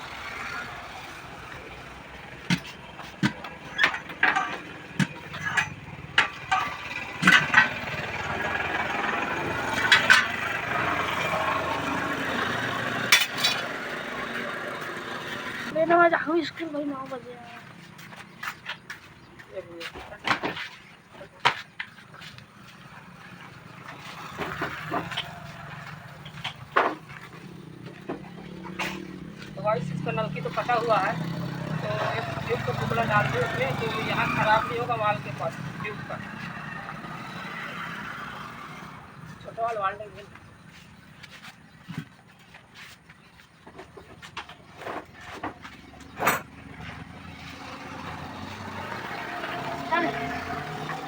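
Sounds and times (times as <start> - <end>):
sharp knocks and clicks: 2.4 - 7.9
metal knocks and clanks: 2.4 - 11.0, 23.8 - 29.6, 43.7 - 47.3.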